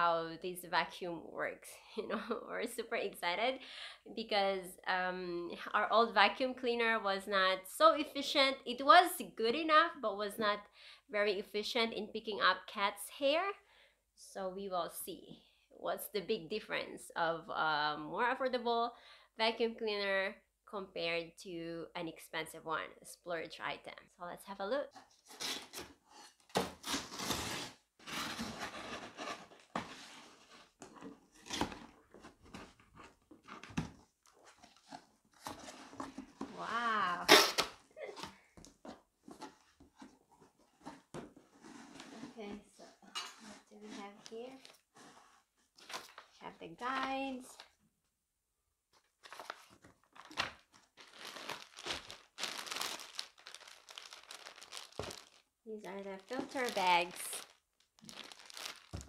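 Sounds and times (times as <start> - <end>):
packaging rustling and tearing: 49.2 - 59.0.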